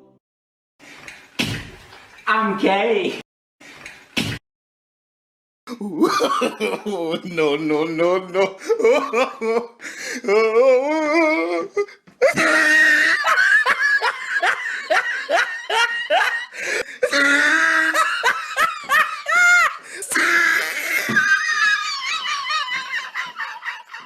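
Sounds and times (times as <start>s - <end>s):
hearty laughter: 5.8s - 7.6s, 8.4s - 10.0s, 11.2s - 24.0s.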